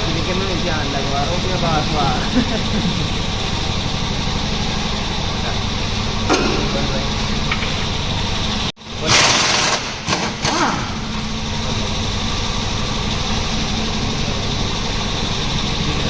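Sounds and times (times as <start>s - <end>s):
machine hum: 0.0s - 16.0s
pneumatic impact wrench hiss: 9.0s - 11.2s.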